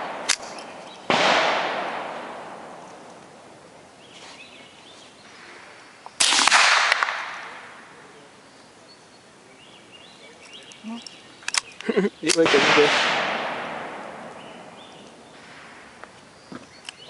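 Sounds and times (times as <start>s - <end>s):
loud gunshots with echo: 0.0s - 3.1s, 6.2s - 7.9s, 12.4s - 16.0s
quick sharp gunshot cracks: 0.0s - 3.2s, 6.2s - 7.7s, 12.3s - 16.0s.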